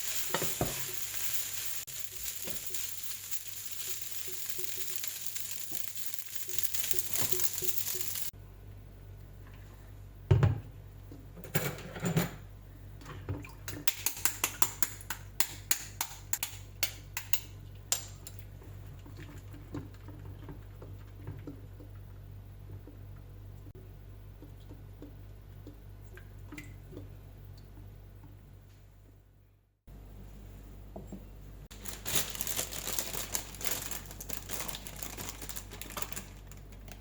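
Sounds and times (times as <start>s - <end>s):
rice sizzling in a hot pan: 0.0s - 8.3s.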